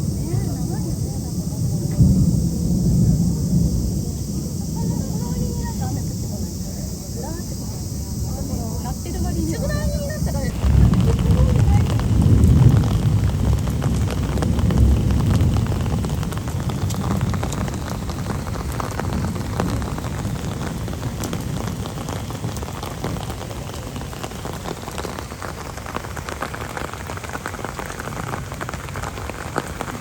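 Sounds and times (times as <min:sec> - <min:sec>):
low rumble: 0:00.0 - 0:23.9
steady rain falling: 0:00.0 - 0:30.0.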